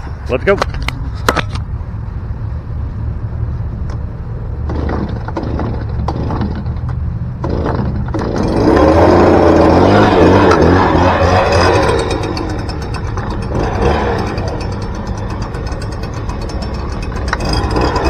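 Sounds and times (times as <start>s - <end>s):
recoil starter tugs: 4.6s - 18.0s
leaf blower engine running: 7.4s - 18.0s.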